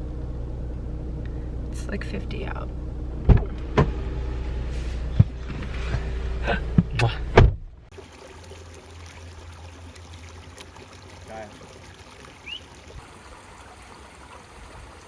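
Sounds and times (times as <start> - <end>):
car cabin rumble: 0.0 - 7.9
loud thump: 3.2 - 4.0, 6.7 - 7.7.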